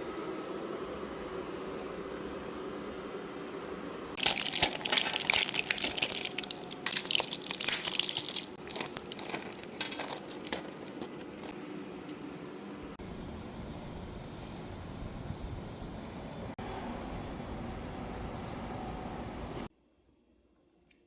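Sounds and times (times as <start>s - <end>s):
packaging crinkling and rustling: 4.2s - 11.5s.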